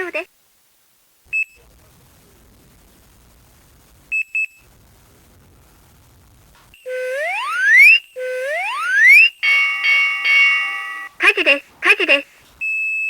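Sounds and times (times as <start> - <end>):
rising alarm tone sweep: 6.9 - 11.1
smoke alarm beeps: 6.9 - 11.6.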